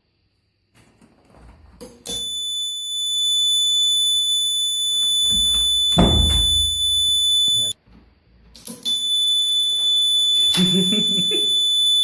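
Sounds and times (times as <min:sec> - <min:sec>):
buzzer high-pitched tone: 0:02.1 - 0:07.8, 0:08.8 - 0:12.0.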